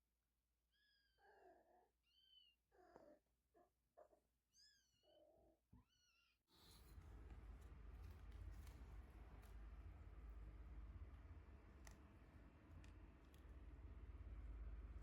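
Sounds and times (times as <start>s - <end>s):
low hum and hiss: 6.7s - 15.0s.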